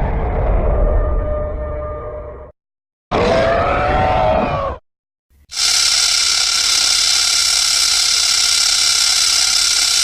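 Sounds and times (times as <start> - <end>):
harsh electric buzz: 5.5 - 10.0.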